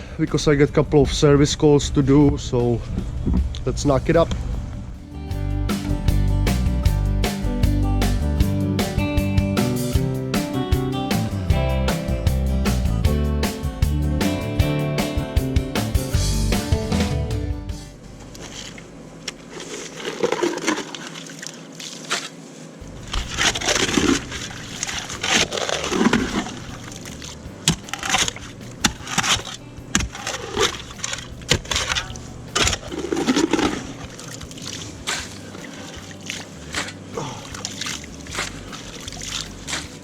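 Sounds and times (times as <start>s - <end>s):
squelching water: 18.2s - 40.0s
digging tool scraping wet mud: 18.4s - 40.0s
digging tool knocks: 23.2s - 35.4s.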